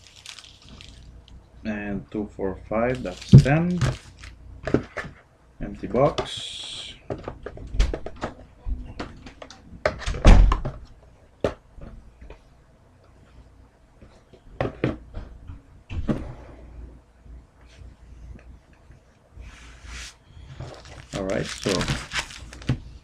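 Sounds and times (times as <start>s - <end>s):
card packs handled on a table: 0.0s - 1.1s, 2.9s - 4.9s, 20.5s - 22.9s.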